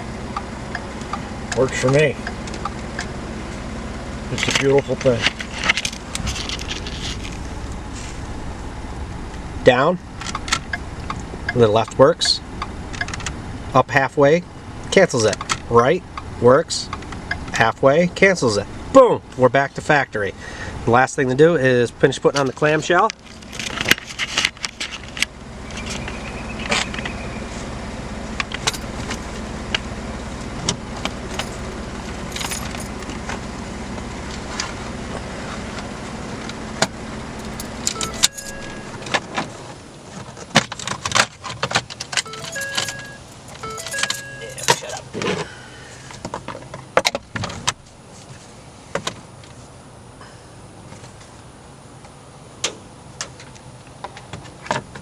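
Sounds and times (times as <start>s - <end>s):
keys jangling: 28.6s - 29.4s, 31.3s - 33.2s, 37.4s - 39.2s, 42.1s - 45.0s
short beeps: 37.4s - 39.2s, 42.2s - 45.1s.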